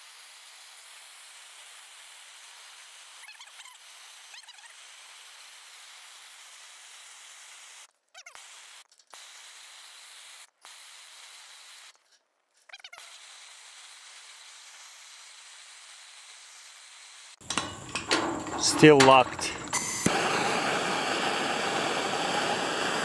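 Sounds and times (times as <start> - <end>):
torch flame hissing: 19.6 - 23.0.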